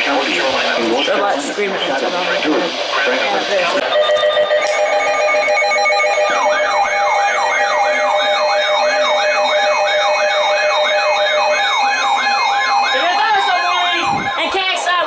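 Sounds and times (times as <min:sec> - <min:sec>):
electronic siren whooping: 0:03.8 - 0:15.0
steady alert tone: 0:03.8 - 0:15.0.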